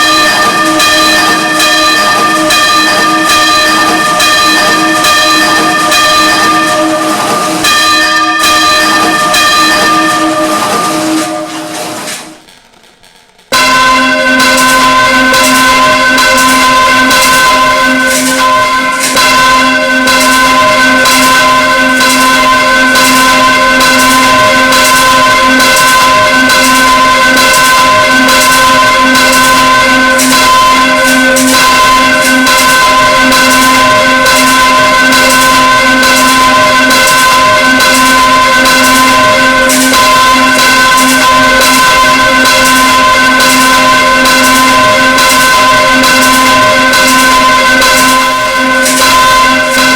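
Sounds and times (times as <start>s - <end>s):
church bell ringing: 0.0s - 12.4s, 13.5s - 49.9s.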